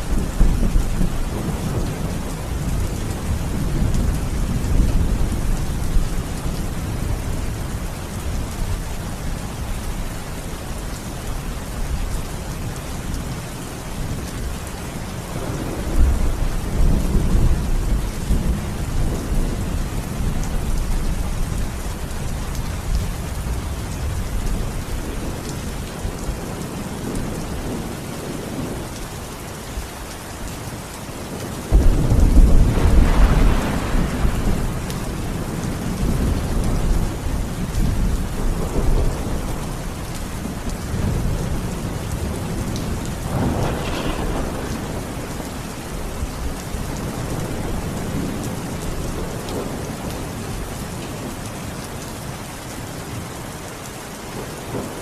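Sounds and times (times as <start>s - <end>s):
thunder rumbling: 0.0s - 9.6s, 15.2s - 29.0s, 31.7s - 50.6s
steady rain: 0.0s - 55.0s.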